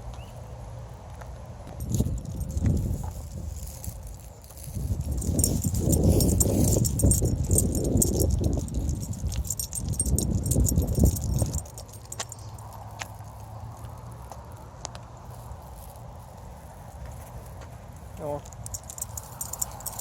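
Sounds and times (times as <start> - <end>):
heavy low rumbling and rustling: 0.0 - 20.0
small metal pieces jingling: 1.7 - 14.3, 18.2 - 20.0.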